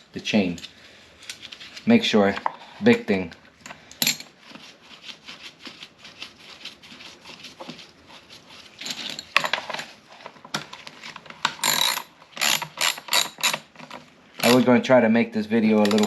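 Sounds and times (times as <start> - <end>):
small metal parts clinking: 8.8 - 9.7, 11.6 - 13.6, 15.8 - 16.0
metal parts clattering: 8.8 - 9.8.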